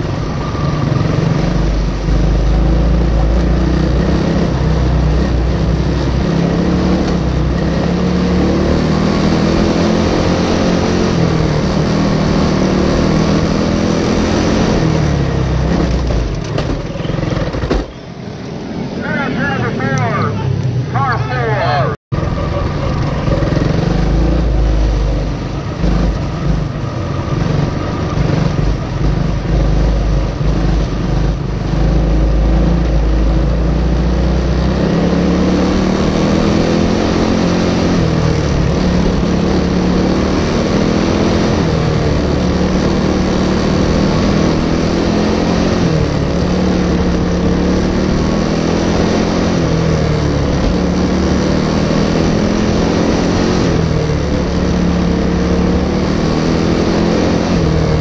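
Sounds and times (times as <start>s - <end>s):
kart engine revving: 0.0s - 58.0s
heavy low rumble: 14.8s - 34.1s.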